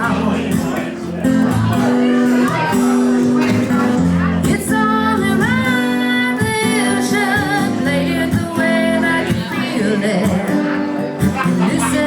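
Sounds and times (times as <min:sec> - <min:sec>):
acoustic guitar: 0:00.0 - 0:12.0
woman singing: 0:04.4 - 0:12.0.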